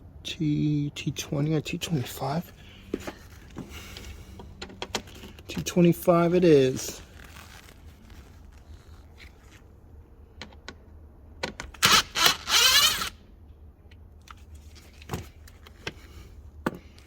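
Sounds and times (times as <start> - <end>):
rasping whirring tool burst: 11.8 - 13.2.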